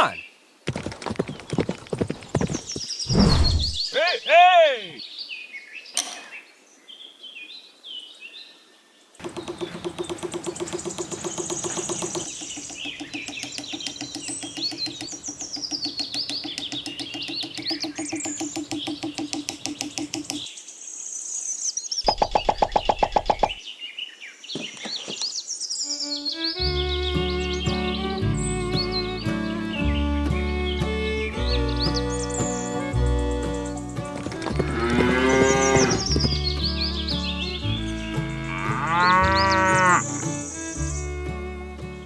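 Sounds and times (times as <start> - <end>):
rapid buzzing rattle: 9.2 - 20.4
birds chirping: 9.2 - 20.8, 24.5 - 42.0.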